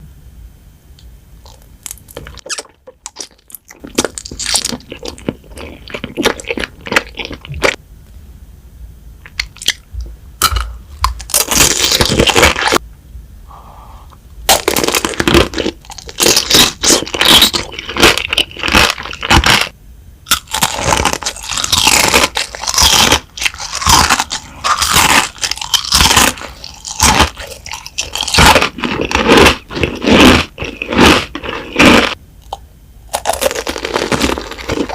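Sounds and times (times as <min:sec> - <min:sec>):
crunchy food being chewed: 0:01.4 - 0:07.8, 0:09.2 - 0:12.8, 0:14.5 - 0:19.7, 0:20.3 - 0:34.9.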